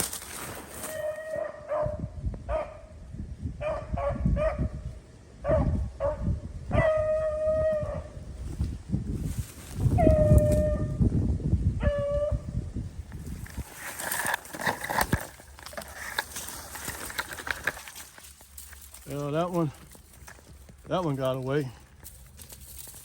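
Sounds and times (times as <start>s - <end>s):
rustling through brush: 0.0s - 1.4s, 8.3s - 11.0s, 13.0s - 23.0s.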